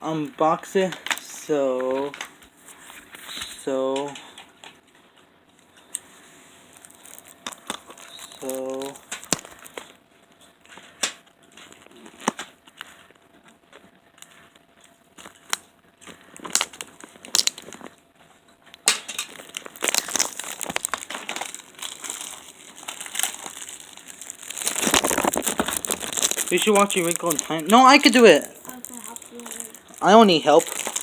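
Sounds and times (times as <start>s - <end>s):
plastic wrap crinkling and tearing: 6.5s - 10.0s, 10.6s - 18.0s, 18.8s - 31.0s.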